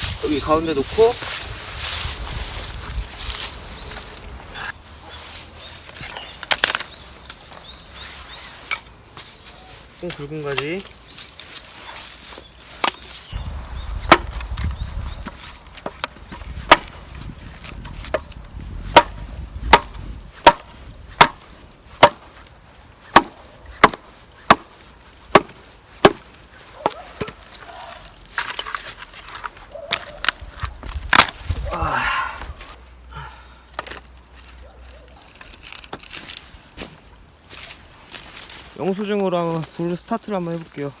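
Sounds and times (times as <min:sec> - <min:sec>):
axe chopping wood knocks: 0:14.1 - 0:14.4, 0:15.2 - 0:16.9, 0:18.9 - 0:21.4, 0:22.0 - 0:22.3, 0:23.1 - 0:24.7, 0:25.3 - 0:27.4.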